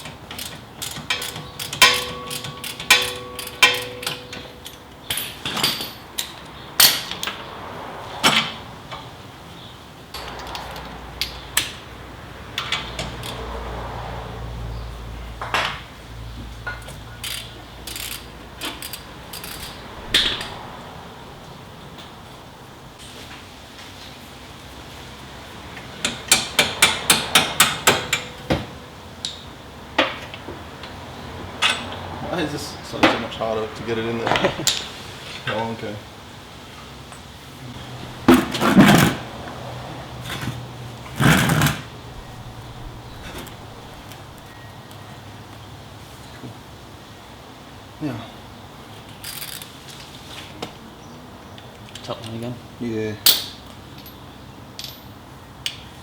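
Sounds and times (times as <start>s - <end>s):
metal tools clinking: 0.3s - 7.4s, 16.7s - 20.7s, 40.2s - 44.6s, 53.2s - 55.2s
metal parts clattering and scraping: 0.4s - 7.3s, 16.8s - 20.7s, 38.3s - 39.3s, 40.2s - 44.5s, 49.2s - 50.1s.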